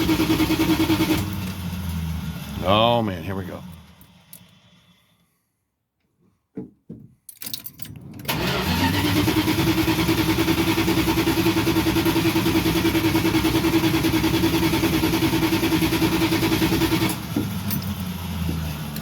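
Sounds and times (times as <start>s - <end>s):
starter cranking engine: 0.0s - 2.1s, 8.3s - 19.0s
knocks: 6.5s - 7.2s.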